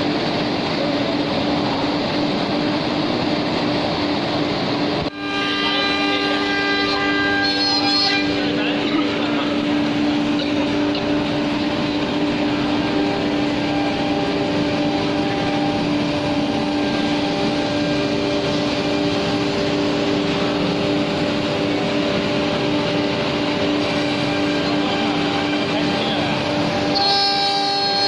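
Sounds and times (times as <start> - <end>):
router spindle whine: 5.0 - 28.0
machine and dust extraction rushing: 8.2 - 27.0.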